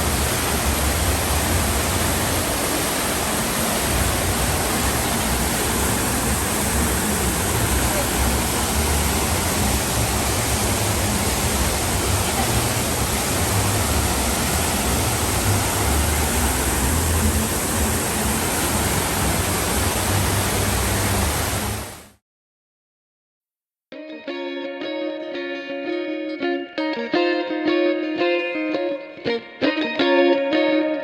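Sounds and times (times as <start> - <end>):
fountain water jets rushing: 0.0 - 22.1.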